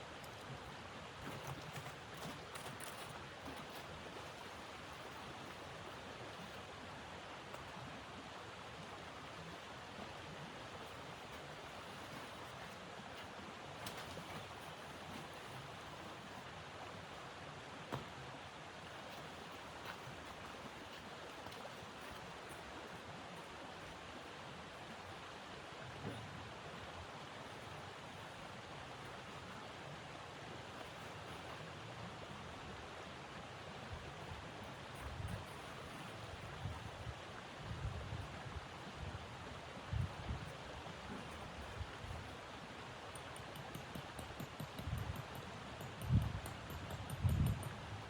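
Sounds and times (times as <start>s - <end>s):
faint clicks: 43.1s - 47.9s.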